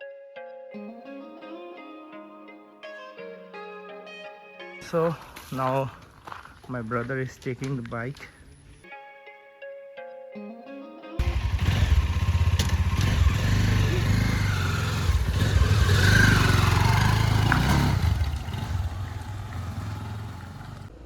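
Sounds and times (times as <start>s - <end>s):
motorcycle engine riding off: 11.2s - 21.0s.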